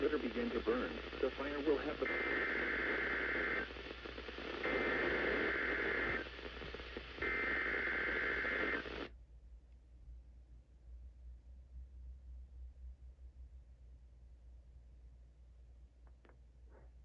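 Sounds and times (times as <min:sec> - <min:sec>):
radio static: 0:00.0 - 0:09.1.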